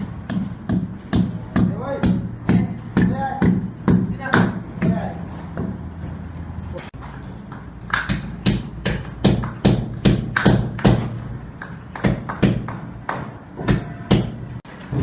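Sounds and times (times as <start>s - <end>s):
hammer striking nails: 7.9s - 14.4s.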